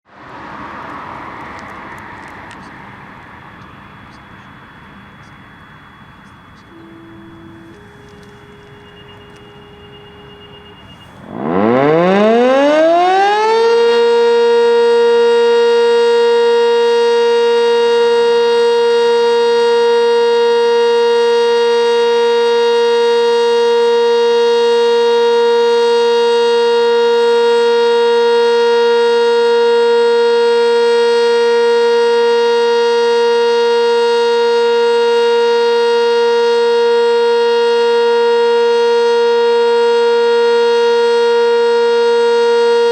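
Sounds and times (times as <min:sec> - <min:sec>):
warning siren winding up: 0:00.8 - 0:42.9.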